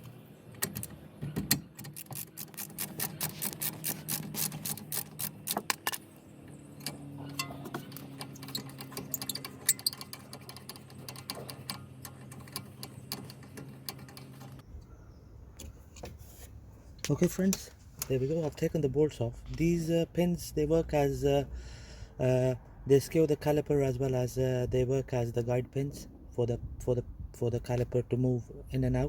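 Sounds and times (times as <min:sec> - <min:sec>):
hand ratchet clicking: 0:01.8 - 0:06.0.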